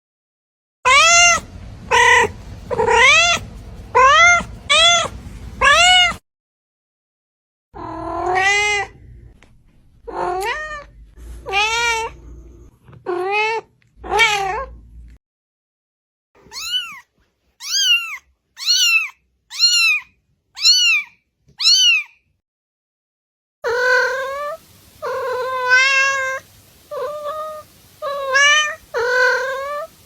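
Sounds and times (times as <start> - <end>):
cat meowing: 0.9 - 3.4, 4.0 - 6.2, 7.8 - 9.0, 10.1 - 12.4, 13.1 - 14.8, 16.4 - 22.2, 23.6 - 30.0
low hum: 0.9 - 6.2.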